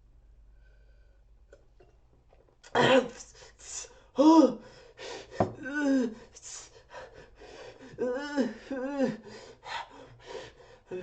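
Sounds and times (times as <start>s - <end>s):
man hissing breaths: 3.2s - 5.6s, 6.2s - 7.9s.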